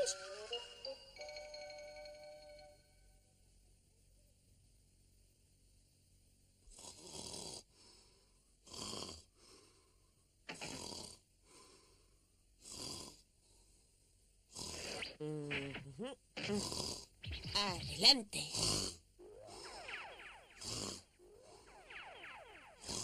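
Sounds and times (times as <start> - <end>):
cartoon dog snoring: 6.7 - 7.9, 8.6 - 9.6, 10.5 - 11.2, 12.6 - 13.3, 14.5 - 17.7, 18.4 - 19.9, 20.6 - 21.7, 22.8 - 23.0
faint breath: 7.7 - 8.6, 9.2 - 10.3, 11.4 - 12.4, 13.4 - 15.0, 19.4 - 20.0.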